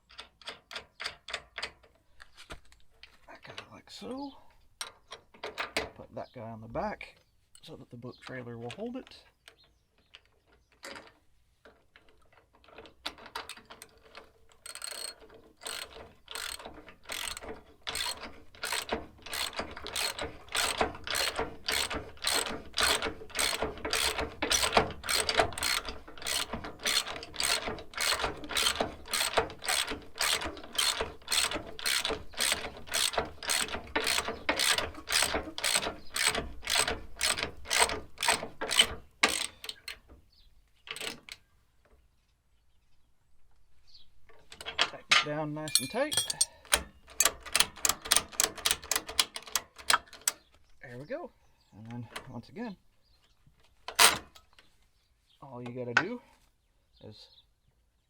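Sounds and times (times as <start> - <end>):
ratchet wrench clicking: 14.6 - 39.5.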